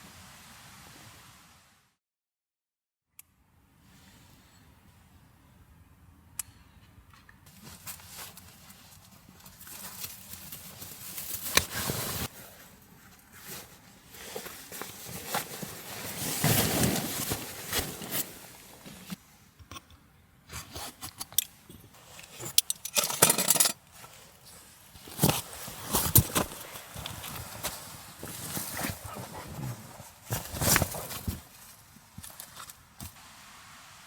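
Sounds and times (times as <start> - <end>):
scrapes and rustles: 7.5 - 19.2, 20.5 - 34.0.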